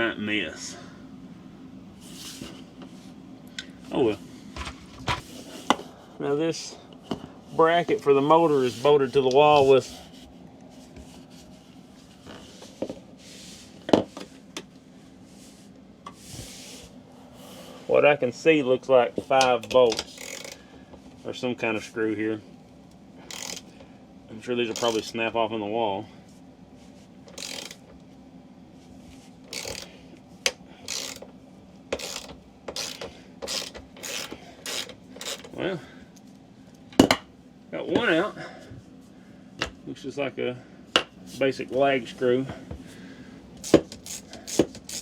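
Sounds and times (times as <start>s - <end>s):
socket ratchet clicking: 20.0s - 20.6s, 23.3s - 23.7s, 24.7s - 25.0s, 27.3s - 27.8s, 29.5s - 29.9s, 30.9s - 31.3s, 32.0s - 35.5s, 43.6s - 45.0s.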